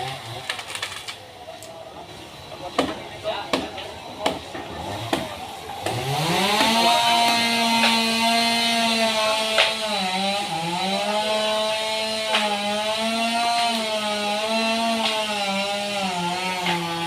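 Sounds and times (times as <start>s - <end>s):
chainsaw cutting wood: 0.0s - 1.3s, 2.6s - 17.0s
sharp cracks: 0.0s - 1.8s, 9.4s - 9.9s.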